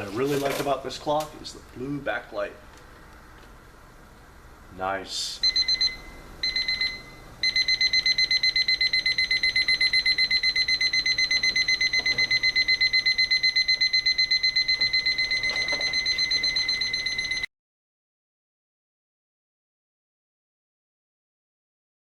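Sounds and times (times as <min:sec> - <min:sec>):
alarm clock beeping: 0:05.4 - 0:17.5.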